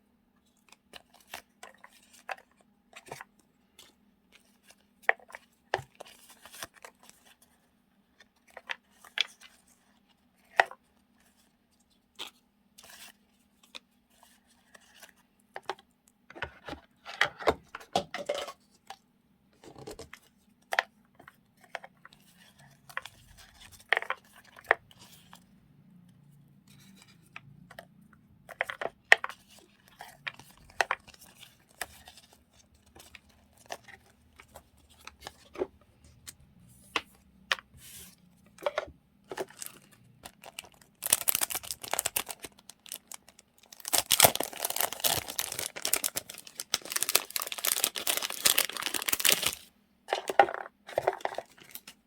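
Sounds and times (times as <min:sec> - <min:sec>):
paper and plastic rustling: 0:28.5 - 0:52.0
packaging crinkling and tearing: 0:39.4 - 0:50.4.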